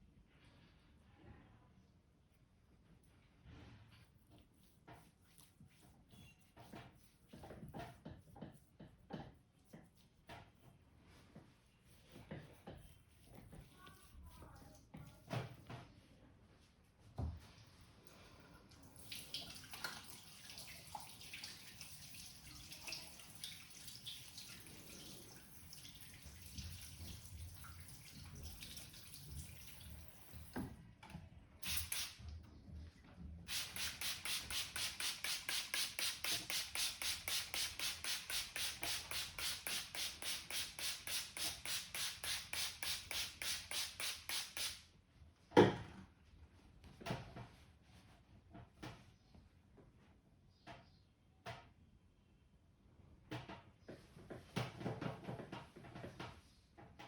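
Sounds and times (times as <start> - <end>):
hands stroking head rapidly: 33.5 - 44.8.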